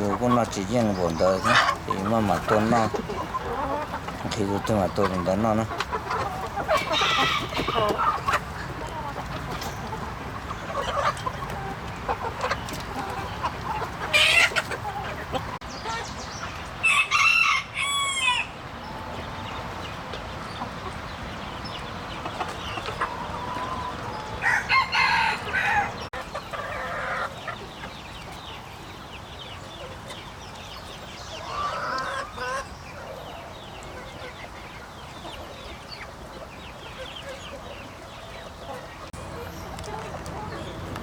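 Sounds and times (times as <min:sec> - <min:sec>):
roosters crowing: 0:00.0 - 0:19.4, 0:22.6 - 0:27.9
chickens clucking: 0:00.0 - 0:41.0.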